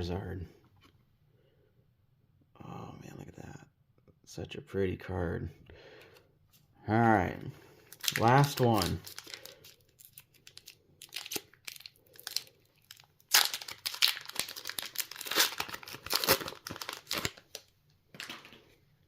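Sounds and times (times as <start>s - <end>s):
foil wrapper crinkling and tearing: 7.9s - 18.3s.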